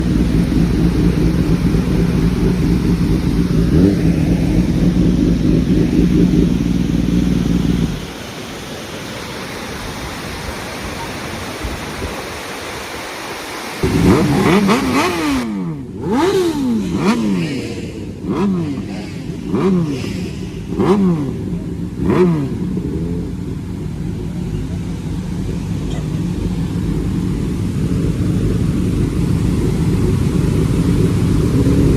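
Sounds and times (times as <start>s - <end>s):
motorcycle engine idling: 0.0s - 8.3s, 15.7s - 31.9s
engine throttle blips: 0.0s - 8.4s, 13.8s - 31.9s.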